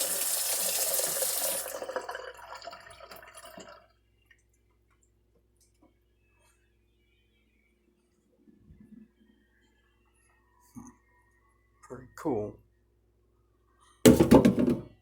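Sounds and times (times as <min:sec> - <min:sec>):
water running from a tap: 0:00.0 - 0:03.8.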